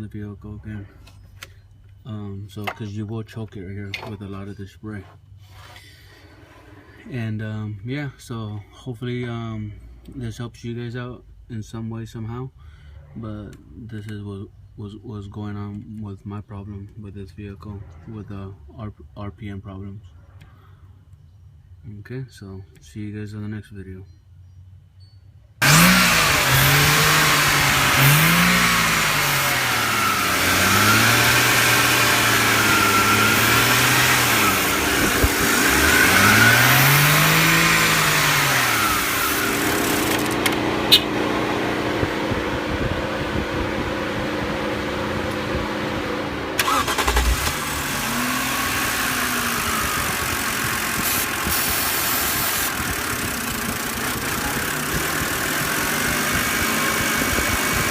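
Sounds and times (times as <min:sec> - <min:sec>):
car engine revving: 0:25.6 - 0:57.9.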